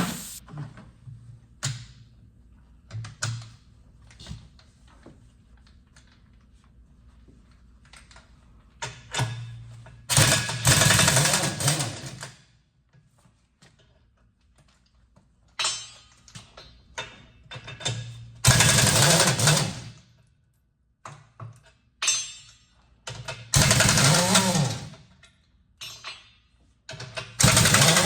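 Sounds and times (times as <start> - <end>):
impact wrench on lug nuts: 10.1 - 12.2, 18.4 - 19.9, 23.3 - 25.0, 27.2 - 28.0.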